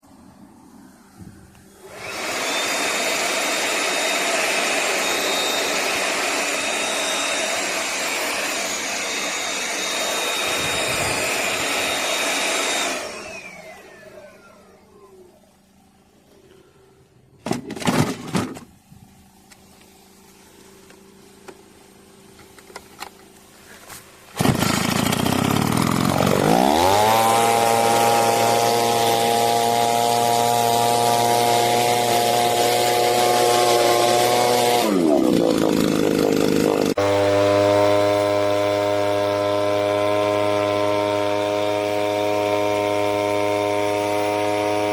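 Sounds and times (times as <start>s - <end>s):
leaf blower engine running: 0.0s - 44.9s
loud rattle: 24.3s - 27.5s.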